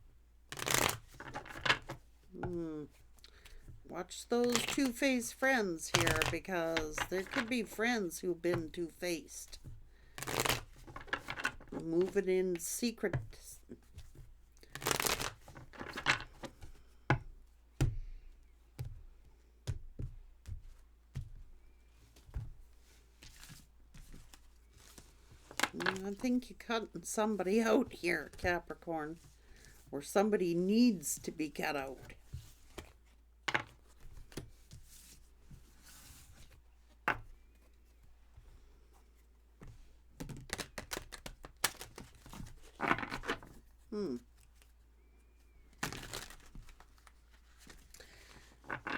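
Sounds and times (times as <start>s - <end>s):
cards rustling: 0.5s - 17.0s, 22.9s - 29.9s, 39.6s - 43.6s, 45.7s - 48.9s.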